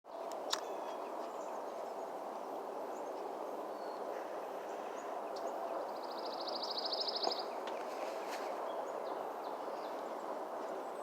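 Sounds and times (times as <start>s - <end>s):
outdoor background noise: 0.1s - 11.0s
faint bird chirps: 2.9s - 10.1s.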